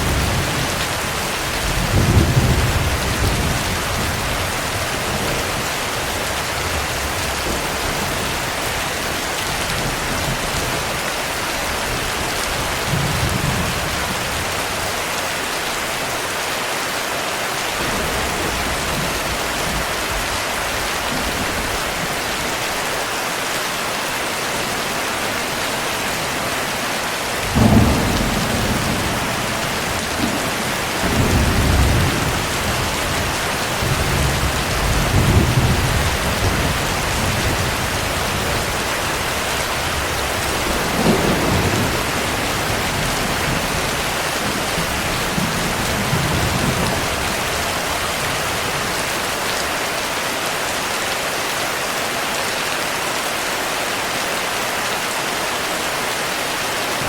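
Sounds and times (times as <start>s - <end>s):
thunder rumbling: 0.0s - 5.6s, 24.9s - 49.0s
heavy rain: 0.0s - 57.0s.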